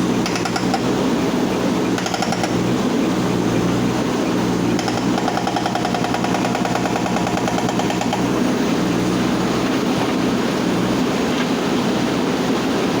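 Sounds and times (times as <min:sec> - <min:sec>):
hydraulic breaker hammering stone: 0:00.0 - 0:01.0, 0:01.9 - 0:03.4, 0:04.6 - 0:08.6
diesel engine running: 0:00.0 - 0:13.0.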